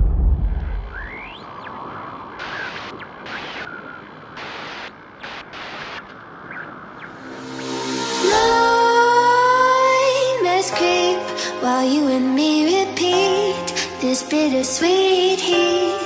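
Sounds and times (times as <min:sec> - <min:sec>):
deep boom: 0:00.0 - 0:01.4
static-like hiss: 0:00.8 - 0:16.0
short pitch glides: 0:07.1 - 0:10.0.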